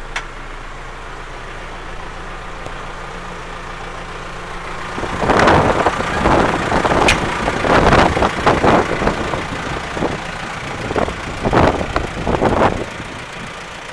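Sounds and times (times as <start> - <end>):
diesel engine running loudly: 0.0 - 13.9.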